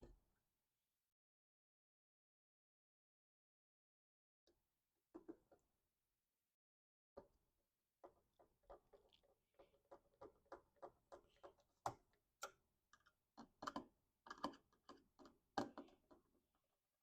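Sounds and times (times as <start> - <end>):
faint clicks and knocks: 8.0 - 16.4.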